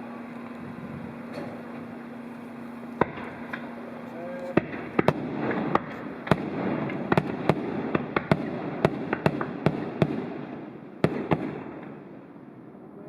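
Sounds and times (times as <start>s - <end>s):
fireworks bangs: 0.0s - 12.4s
fireworks crackle: 0.0s - 12.4s.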